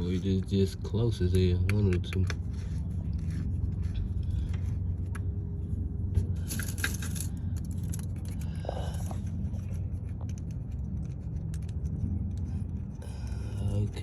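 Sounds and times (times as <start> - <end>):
steady low hum: 0.0 - 14.0
metallic scraping rattle: 6.2 - 12.3.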